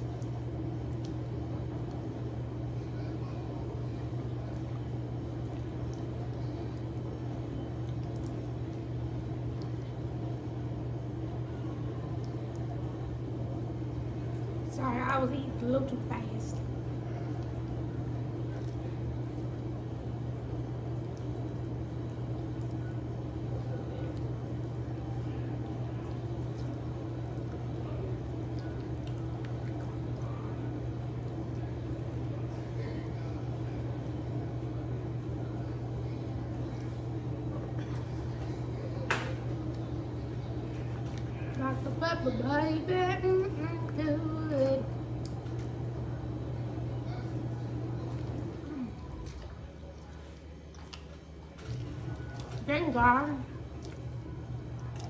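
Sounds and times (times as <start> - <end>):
steady low hum: 0.0 - 55.0
person chewing food: 3.6 - 10.3, 16.5 - 25.0, 25.7 - 32.0, 36.3 - 41.9, 45.0 - 46.4, 47.0 - 52.7, 53.5 - 55.0.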